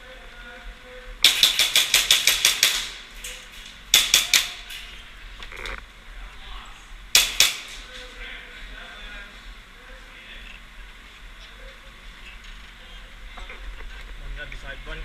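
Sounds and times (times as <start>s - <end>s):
airsoft gun shots: 1.2s - 3.0s, 3.9s - 4.7s, 7.1s - 7.8s.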